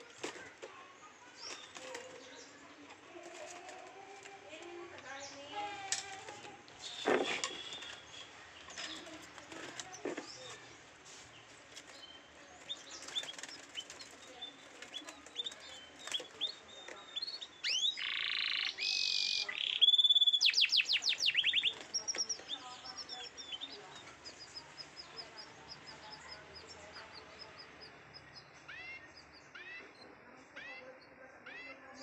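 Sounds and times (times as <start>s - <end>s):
canary singing: 1.3s - 10.8s, 11.8s - 32.0s.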